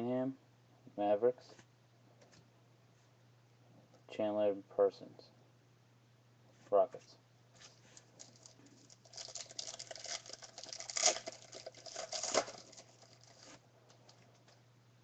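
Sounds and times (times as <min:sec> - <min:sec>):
trading cards shuffling: 0:07.6 - 0:14.6.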